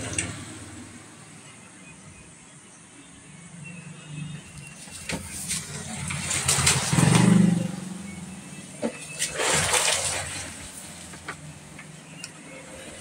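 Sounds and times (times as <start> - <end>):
vehicle engine passing: 4.5 - 13.0.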